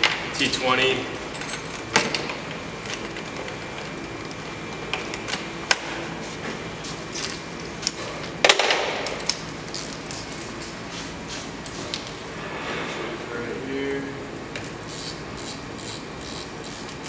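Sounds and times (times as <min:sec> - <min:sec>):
clicks of hand tools and door hardware: 0:01.2 - 0:03.9.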